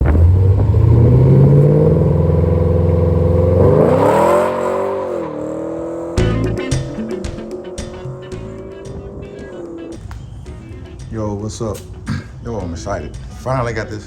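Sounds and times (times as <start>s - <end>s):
car engine revving: 0.0s - 11.0s
music with a beat: 6.2s - 14.0s.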